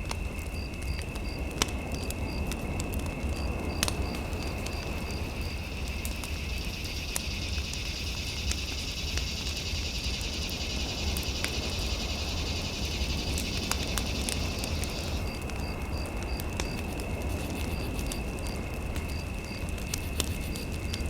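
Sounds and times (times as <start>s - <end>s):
fireplace crackling: 0.0s - 8.9s, 11.2s - 21.0s.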